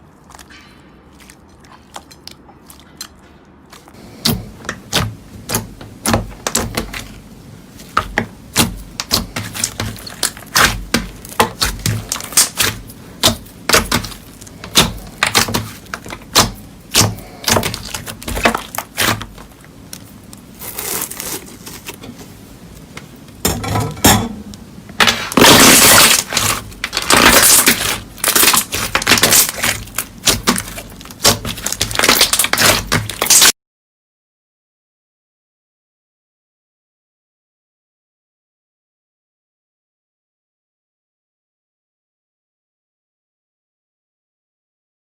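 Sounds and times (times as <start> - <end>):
slime crunchy rustle: 0.0 - 22.9, 25.0 - 33.5
slime crackling and popping: 4.2 - 22.0, 25.0 - 33.5.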